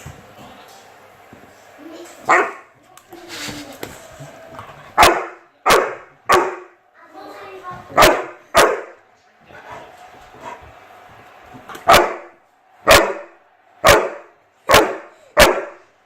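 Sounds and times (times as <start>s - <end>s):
dog barking: 2.3s - 2.7s, 5.0s - 6.8s, 7.9s - 9.0s, 11.8s - 15.8s.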